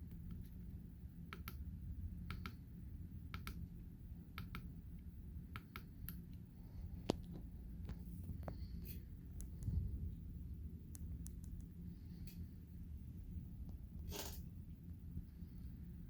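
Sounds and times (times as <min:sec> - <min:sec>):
steady low hum: 0:00.0 - 0:16.0
small sharp clicks: 0:04.4 - 0:04.7.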